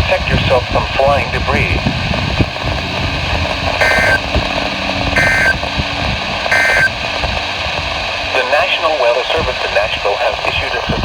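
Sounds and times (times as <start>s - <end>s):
buzzy digital data tones: 3.8s - 4.2s, 5.2s - 5.6s, 6.5s - 7.0s
radio hiss and hum: 3.8s - 4.2s, 5.2s - 5.6s, 6.4s - 7.2s, 8.3s - 11.0s.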